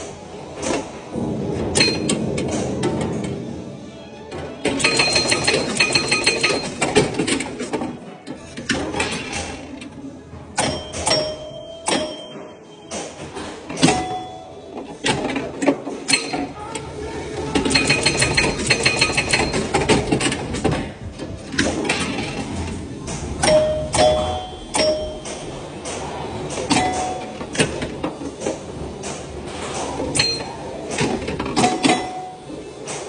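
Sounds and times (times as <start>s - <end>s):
pinball scoring bells ringing: 1.8s - 2.2s, 4.7s - 7.1s, 10.6s - 13.2s, 13.8s - 14.9s, 17.6s - 20.0s, 23.4s - 25.6s, 26.7s - 27.6s, 30.1s - 30.7s, 31.7s - 32.5s
pinball flippers clacking: 4.7s - 9.8s, 17.6s - 33.0s.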